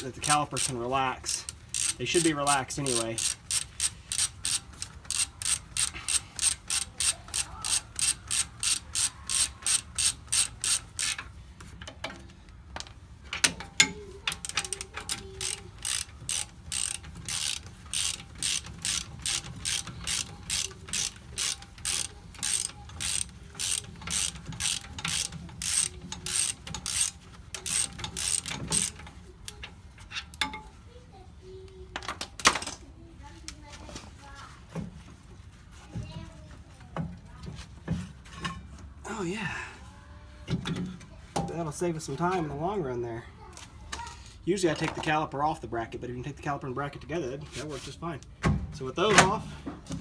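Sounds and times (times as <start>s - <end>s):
ratchet wrench clicking: 0.0s - 11.3s, 13.5s - 29.6s.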